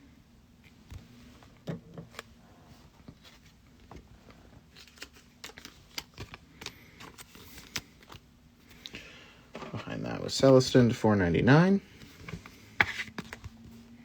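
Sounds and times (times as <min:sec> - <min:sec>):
card stock rustling: 0:03.0 - 0:08.8, 0:12.0 - 0:13.8
cards clicking and tapping: 0:04.8 - 0:08.2.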